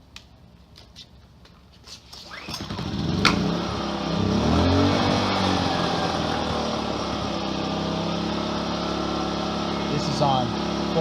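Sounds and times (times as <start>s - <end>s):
generator engine running: 2.4s - 11.0s.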